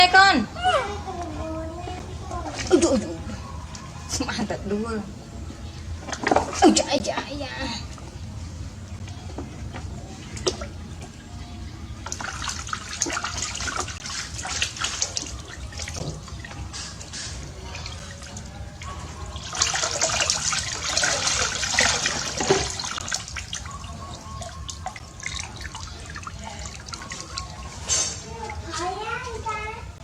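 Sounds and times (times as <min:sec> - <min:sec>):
water splashing in a bathtub: 0:06.0 - 0:07.2, 0:10.2 - 0:11.3, 0:12.0 - 0:29.0.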